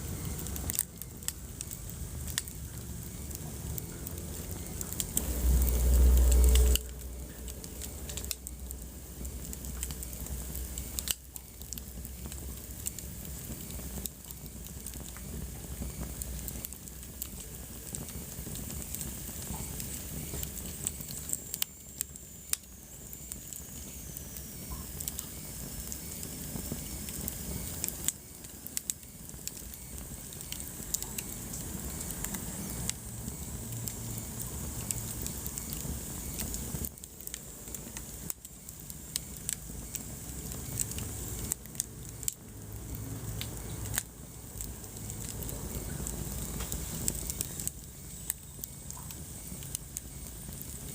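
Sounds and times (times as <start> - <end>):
wood fire crackling: 0.0 - 50.9
low rumble: 2.0 - 11.1.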